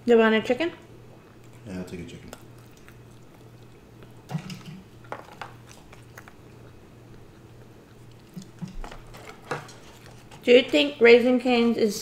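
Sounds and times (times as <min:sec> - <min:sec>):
faint low hum: 0:00.0 - 0:12.0
chewing and biting food: 0:01.1 - 0:10.8.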